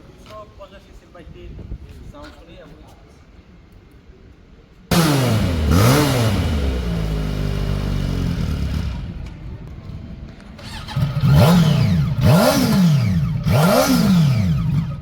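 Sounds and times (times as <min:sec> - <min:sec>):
motorcycle engine revving: 0:04.9 - 0:10.0, 0:10.6 - 0:15.0.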